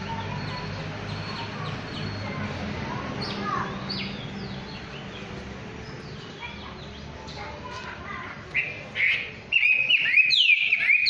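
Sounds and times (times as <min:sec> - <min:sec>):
small songbirds chirping: 0:00.0 - 0:07.9, 0:08.5 - 0:11.0.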